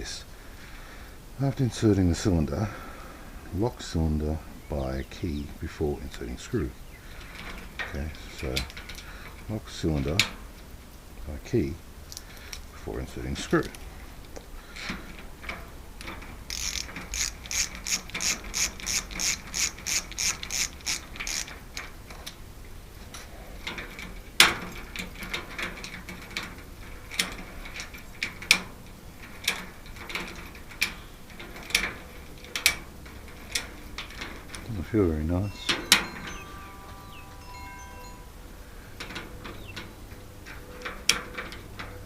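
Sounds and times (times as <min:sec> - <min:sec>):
metal ratcheting clicks: 0:14.8 - 0:22.4.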